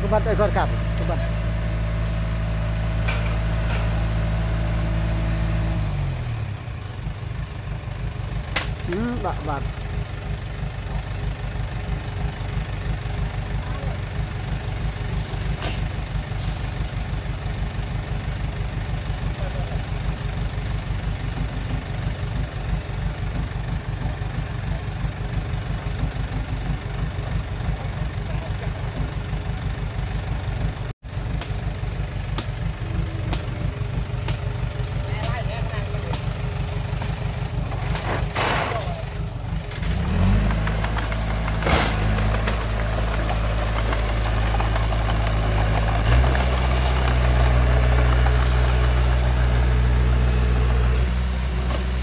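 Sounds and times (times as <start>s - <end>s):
heavy diesel engine idling: 0.0s - 52.0s.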